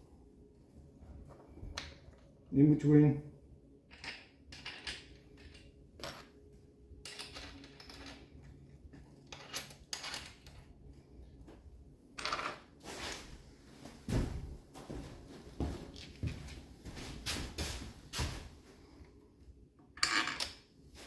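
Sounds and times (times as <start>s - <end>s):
metal hardware clinking and scraping: 7.0s - 8.5s, 9.2s - 10.7s.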